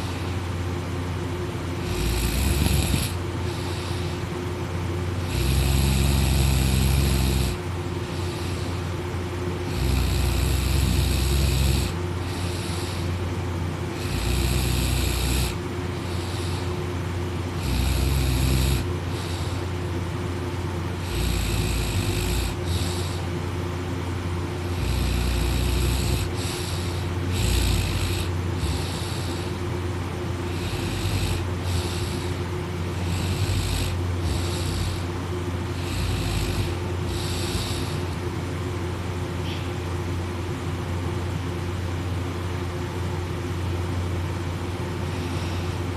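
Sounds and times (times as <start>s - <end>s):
boy snoring: 0.0s - 0.4s, 1.8s - 4.3s, 5.2s - 9.0s, 9.6s - 13.3s, 13.9s - 19.9s, 21.0s - 23.4s, 24.6s - 29.6s, 30.5s - 38.2s.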